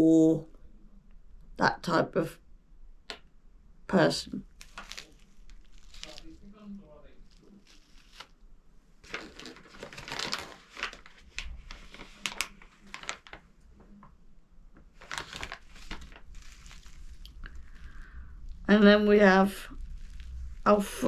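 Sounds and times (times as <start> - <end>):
plastic packaging crinkling: 4.4 - 8.4, 9.0 - 13.5, 14.9 - 18.7, 19.6 - 21.0.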